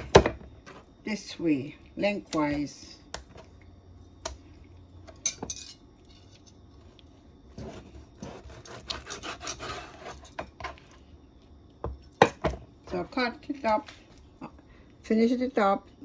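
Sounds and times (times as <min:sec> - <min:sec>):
knife slicing meat: 0:07.5 - 0:10.5.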